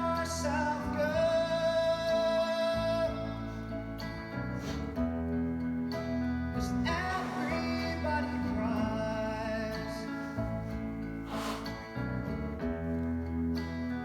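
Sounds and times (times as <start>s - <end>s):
song with singing voice: 0.0s - 3.8s, 6.6s - 11.7s.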